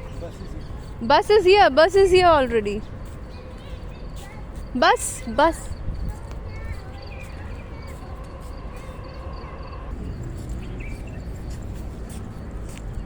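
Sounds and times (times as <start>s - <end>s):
birds chirping: 0.0s - 13.0s
wind rumbling on microphone: 5.2s - 13.0s
vehicle engine running: 9.9s - 13.0s.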